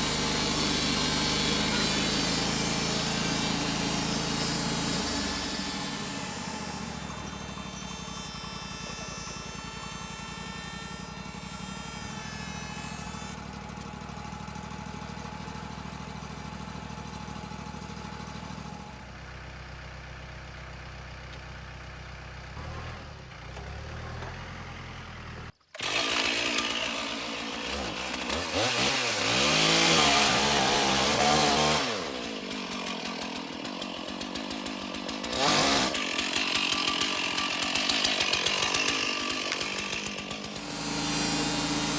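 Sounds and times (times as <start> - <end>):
saw cutting through log: 0.0 - 17.1, 25.7 - 41.9
bandsaw mill engine hum: 0.0 - 41.9.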